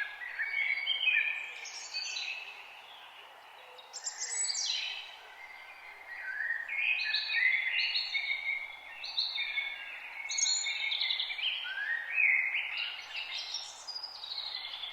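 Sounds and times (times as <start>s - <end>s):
songbirds whistling: 6.2s - 14.9s.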